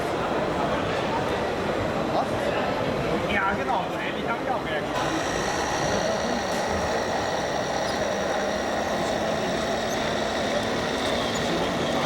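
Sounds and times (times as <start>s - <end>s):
model trucks engine-like drone: 4.9s - 12.0s.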